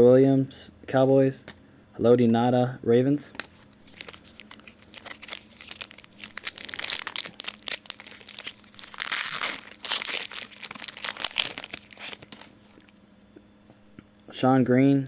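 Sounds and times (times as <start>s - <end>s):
foil wrapper crinkling: 3.4s - 13.0s.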